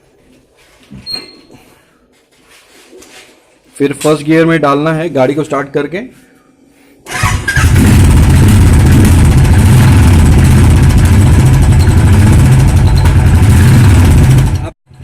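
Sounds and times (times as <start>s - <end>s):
motorcycle engine idling: 7.5s - 15.0s.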